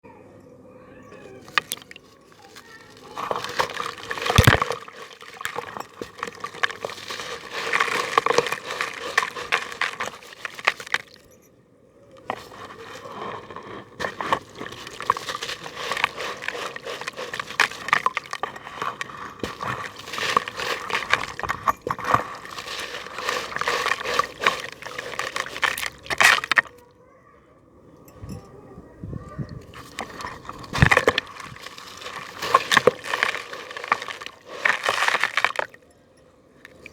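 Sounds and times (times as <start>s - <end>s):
crunchy balls crumbling in water: 1.2s - 11.4s, 12.2s - 26.8s, 29.5s - 35.8s, 36.7s - 36.9s.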